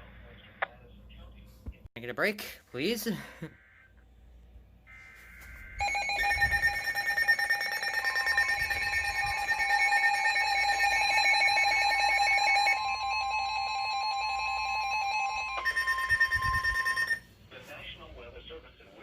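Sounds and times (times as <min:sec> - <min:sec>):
steady warning alert tone: 0:04.9 - 0:17.2.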